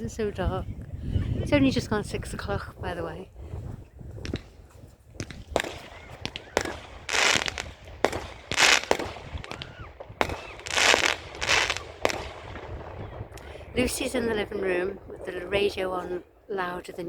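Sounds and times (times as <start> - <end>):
crackling firework bursts: 4.2 - 14.1
fireworks bangs: 4.2 - 16.1.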